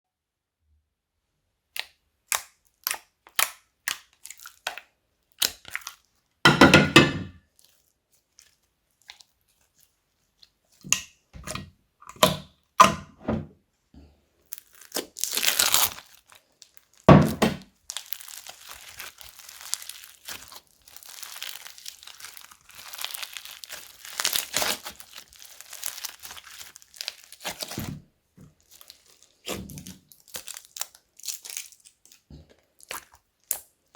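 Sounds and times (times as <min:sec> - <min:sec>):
slime popping and crackling: 0:01.8 - 0:06.0, 0:14.5 - 0:28.0, 0:28.6 - 0:33.7.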